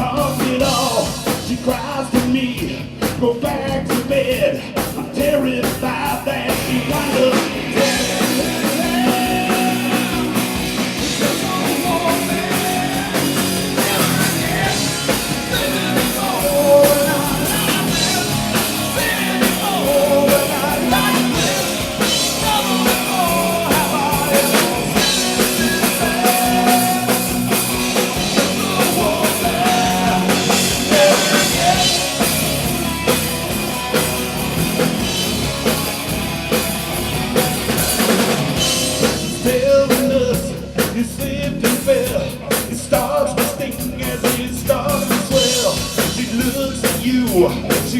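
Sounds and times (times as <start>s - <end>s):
bass guitar: 0.0s - 47.9s
drum kit with cymbal hits: 0.0s - 47.9s
electric guitars: 0.0s - 47.9s
bending melodic guitar line: 7.3s - 39.6s.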